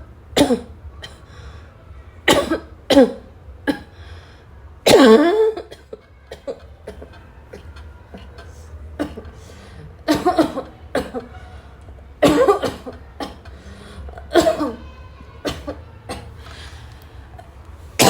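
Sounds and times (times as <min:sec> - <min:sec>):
woman coughing: 0:02.3 - 0:03.9, 0:04.9 - 0:07.6, 0:09.0 - 0:09.3, 0:10.1 - 0:11.3, 0:12.2 - 0:13.5, 0:14.3 - 0:14.8.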